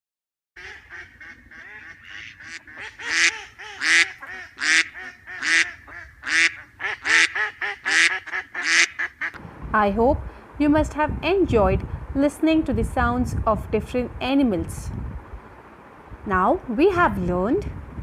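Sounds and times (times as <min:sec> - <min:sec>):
ducks quacking: 0:00.6 - 0:09.4.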